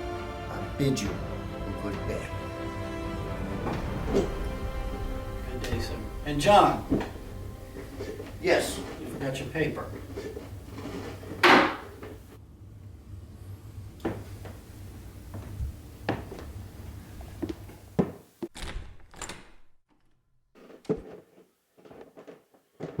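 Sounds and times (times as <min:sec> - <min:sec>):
person moving about a room: 0:03.2 - 0:12.4, 0:13.9 - 0:23.0.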